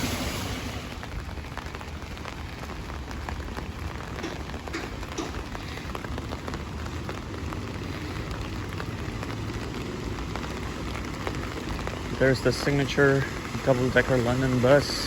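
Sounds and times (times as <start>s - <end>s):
steady rain: 0.0s - 15.0s.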